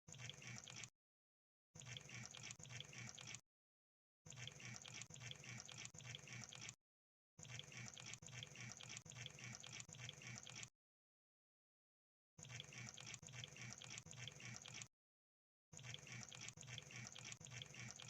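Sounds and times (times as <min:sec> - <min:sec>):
faint rapid clicking and crackling: 0:15.8 - 0:18.0.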